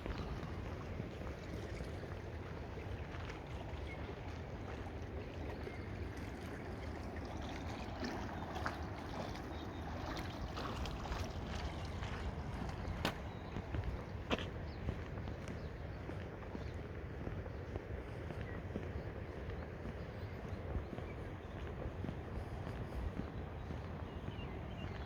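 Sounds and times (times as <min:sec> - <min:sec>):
flowing splashing water: 0:00.0 - 0:15.5.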